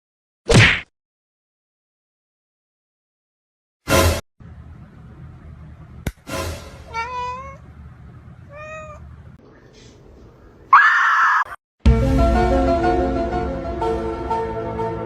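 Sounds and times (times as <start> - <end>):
music: 6.3 - 6.9, 11.8 - 15.0
cat meowing: 6.9 - 7.6, 8.4 - 9.0.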